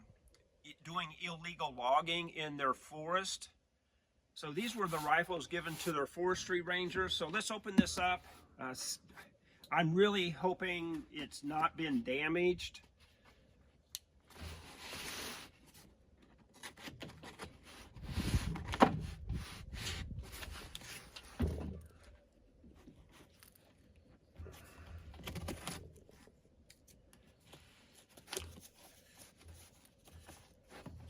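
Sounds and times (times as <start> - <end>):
cardboard scraping and rustling: 4.7 - 6.0, 14.3 - 26.4, 27.2 - 31.0.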